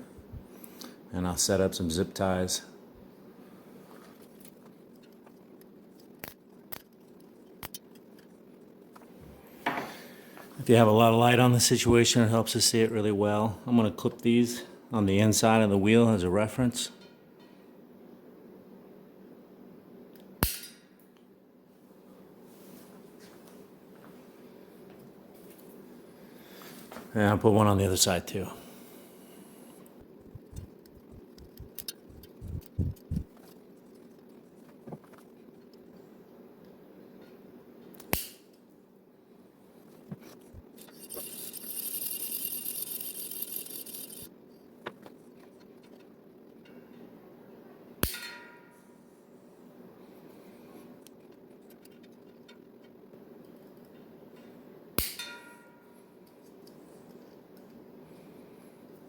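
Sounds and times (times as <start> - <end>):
steady low hum: 0.0 - 16.4, 27.3 - 48.0
zip tie clicking: 30.3 - 33.3.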